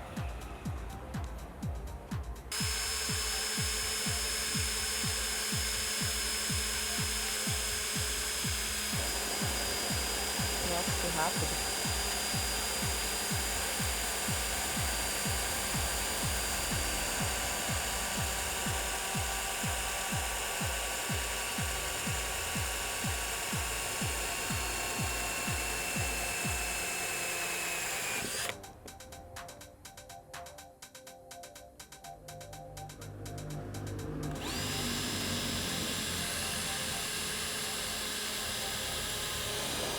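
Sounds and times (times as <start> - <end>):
electric drill whining: 2.5 - 28.7, 34.3 - 39.9
fast regular clicking: 2.5 - 29.7, 34.3 - 39.9.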